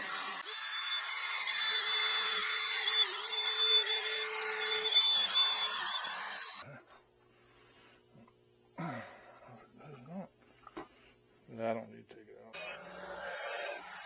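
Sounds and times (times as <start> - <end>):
power tool whine scouring metal: 0.0 - 6.6, 12.6 - 14.0.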